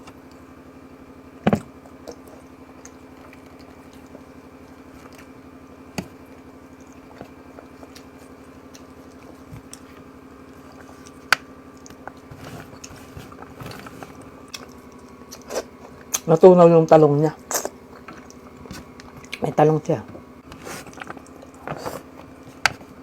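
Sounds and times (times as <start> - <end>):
steady low hum: 0.0 - 23.0
wet chewing and biting: 1.6 - 16.3, 17.4 - 19.4, 20.4 - 23.0.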